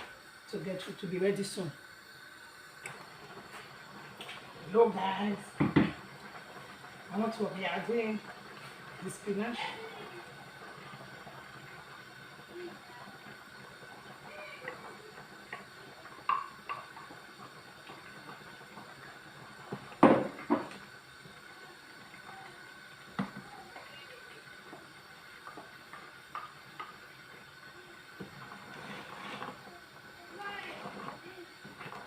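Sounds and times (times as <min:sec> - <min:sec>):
pot and utensils clinking: 0:16.2 - 0:17.1.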